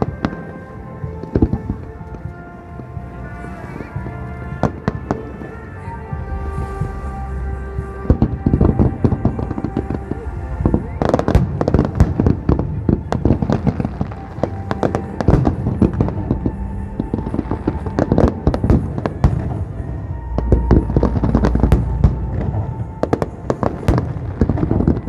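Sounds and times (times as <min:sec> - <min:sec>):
music playing: 0:00.0 - 0:25.0
low rumble of booms: 0:06.1 - 0:25.0
fireworks bursts and crackling: 0:08.0 - 0:25.0.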